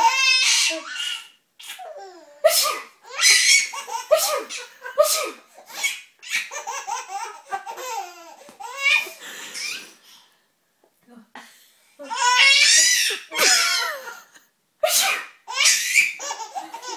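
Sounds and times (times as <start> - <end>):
baby laughing: 3.1 - 10.0, 12.2 - 14.3, 15.0 - 16.9.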